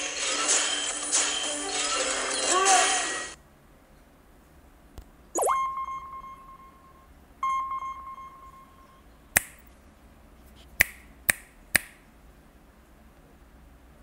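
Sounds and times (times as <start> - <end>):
ringing chime tones: 5.4 - 9.0.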